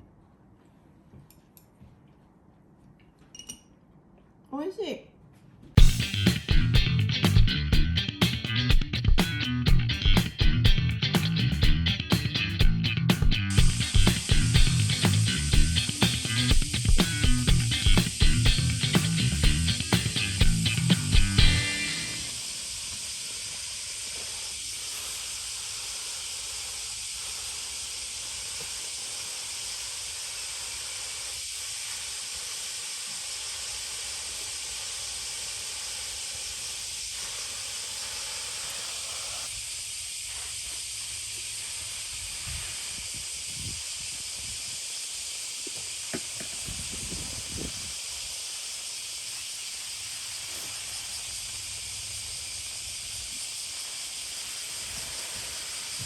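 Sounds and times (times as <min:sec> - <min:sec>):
steady even hiss: 0:05.7 - 0:56.0.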